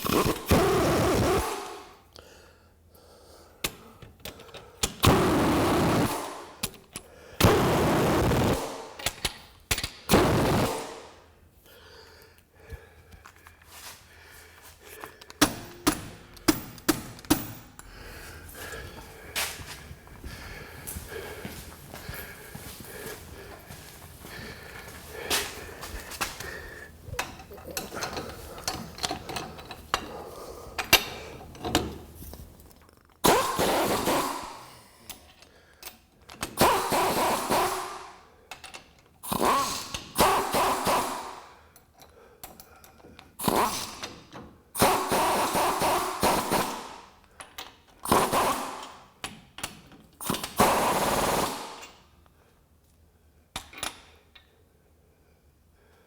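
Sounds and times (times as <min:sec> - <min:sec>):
impact wrench hammering: 0:04.8 - 0:11.2, 0:15.3 - 0:17.9, 0:27.2 - 0:32.0, 0:33.2 - 0:34.7, 0:36.4 - 0:41.6, 0:43.4 - 0:47.1, 0:48.0 - 0:52.0
light metal clicks and rattles: 0:27.1 - 0:33.2.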